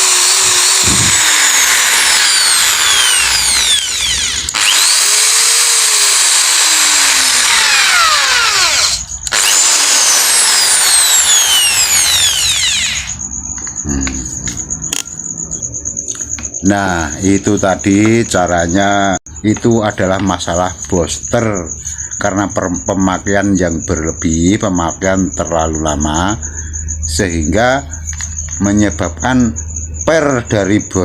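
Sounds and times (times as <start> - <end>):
electric drill motor whining: 0.0 - 13.2.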